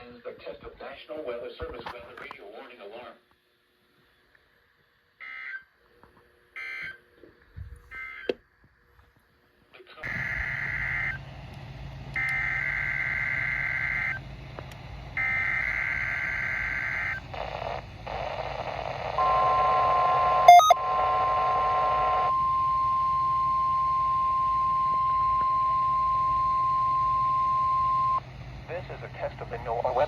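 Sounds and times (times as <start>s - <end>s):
radio hiss: 9.8s - 30.0s
steady warning alarm tone: 10.0s - 11.4s, 12.1s - 30.0s
warbling data tones: 10.1s - 11.2s, 12.2s - 14.2s, 15.2s - 28.2s.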